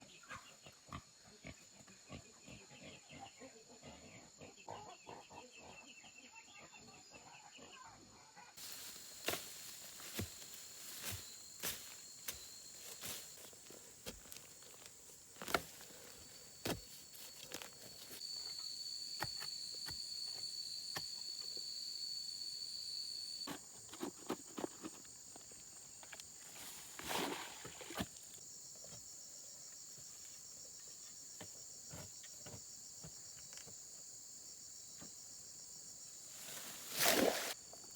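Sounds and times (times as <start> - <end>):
insects chirping: 8.6 - 37.9.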